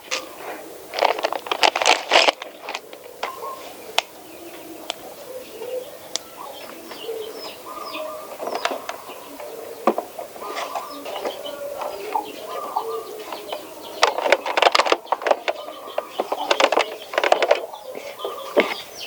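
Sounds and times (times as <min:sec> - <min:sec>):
doves cooing: 0:00.0 - 0:19.0
small birds chirping: 0:00.0 - 0:19.0
sharp clicks and rattles: 0:00.9 - 0:03.4, 0:13.3 - 0:17.8.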